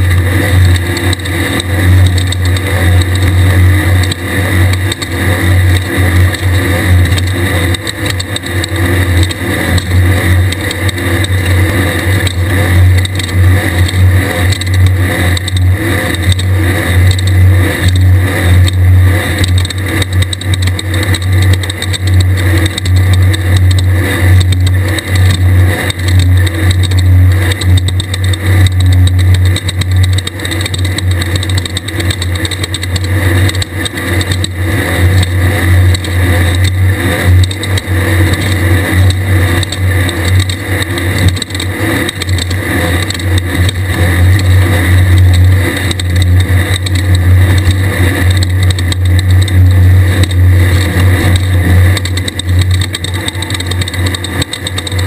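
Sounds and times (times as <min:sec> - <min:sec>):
buggy engine running hard: 0:00.0 - 0:55.0.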